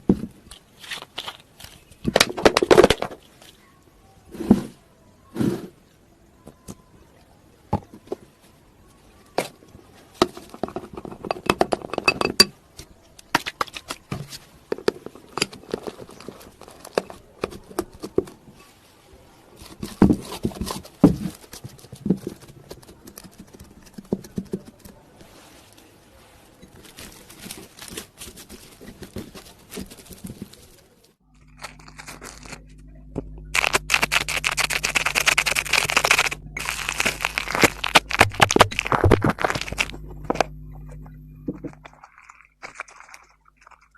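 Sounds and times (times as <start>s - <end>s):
steady low hum: 31.1s - 42.6s
slime clicking and crackling: 33.4s - 40.5s.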